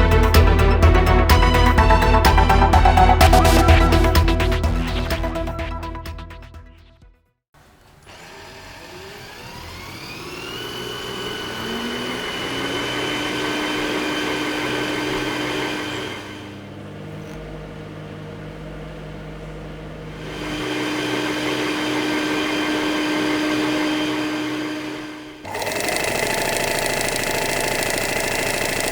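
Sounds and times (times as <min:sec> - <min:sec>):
electric motor whining: 0:07.8 - 0:28.9.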